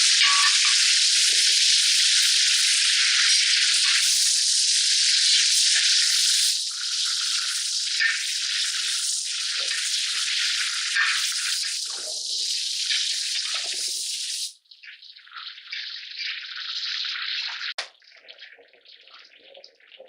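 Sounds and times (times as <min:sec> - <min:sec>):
chutney sizzling in a pan: 0:00.0 - 0:14.6.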